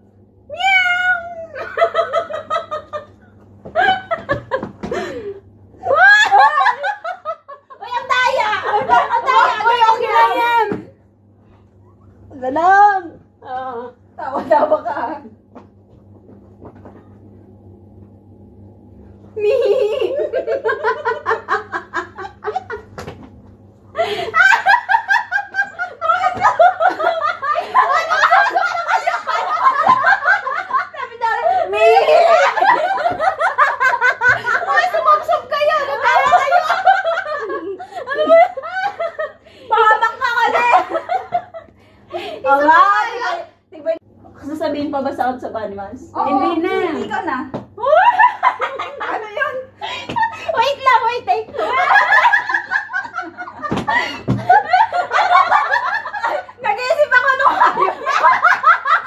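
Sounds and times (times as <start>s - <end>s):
rising cry: 0.5s - 1.8s
people laughing: 1.5s - 10.8s, 19.4s - 23.2s, 24.0s - 43.4s, 46.9s - 59.0s.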